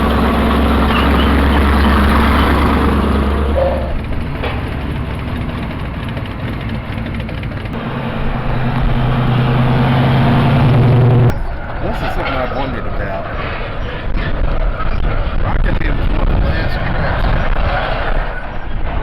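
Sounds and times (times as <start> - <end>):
car engine running: 0.0 - 11.8.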